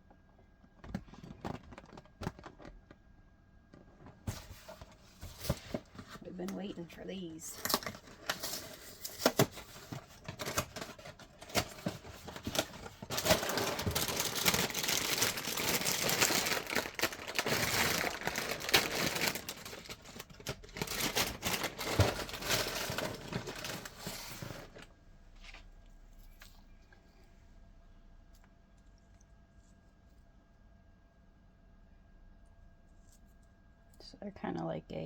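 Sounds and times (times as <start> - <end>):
plastic bag crinkling and tearing: 7.2 - 24.9.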